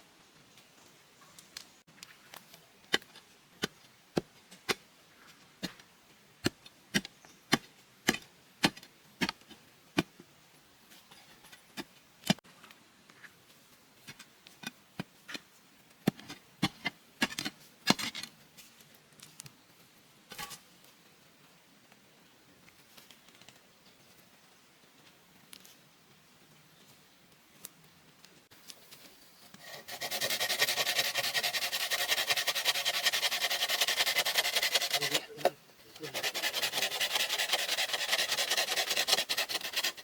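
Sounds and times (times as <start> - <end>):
blade chopping bamboo: 6.4 - 9.4, 29.7 - 35.2, 36.1 - 40.0.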